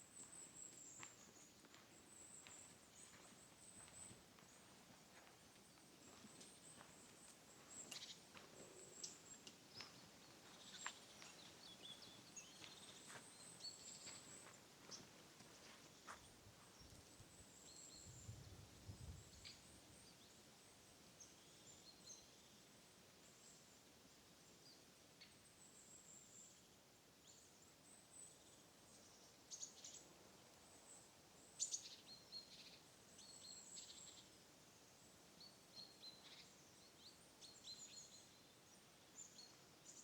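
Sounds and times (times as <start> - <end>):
small birds chirping: 0.2 - 20.4, 35.0 - 40.0.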